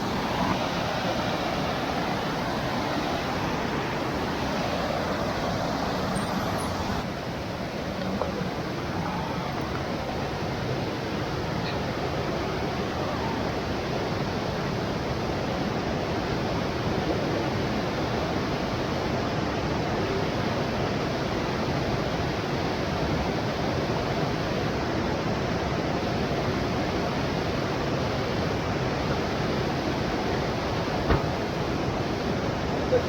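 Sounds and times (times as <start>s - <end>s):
waterfall rushing: 0.0s - 22.9s.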